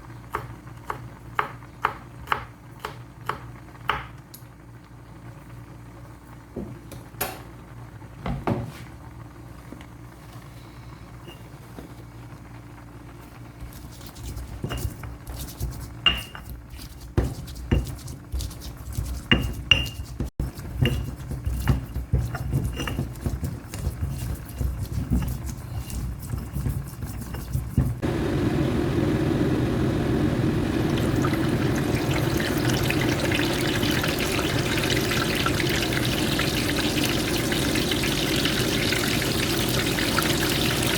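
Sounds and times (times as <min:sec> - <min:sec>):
water running: 0:26.2 - 0:40.9.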